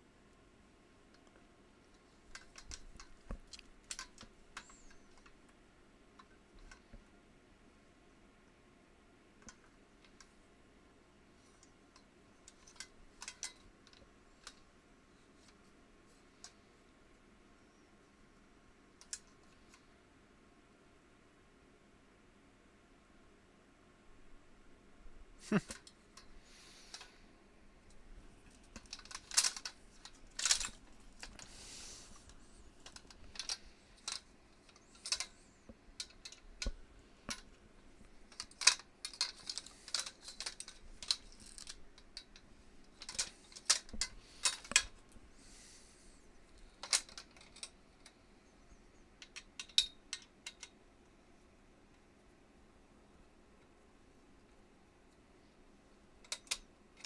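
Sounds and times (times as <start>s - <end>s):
metal parts clinking: 28.5s - 31.5s, 32.2s - 35.4s, 38.2s - 42.4s, 43.0s - 44.9s, 46.8s - 48.1s.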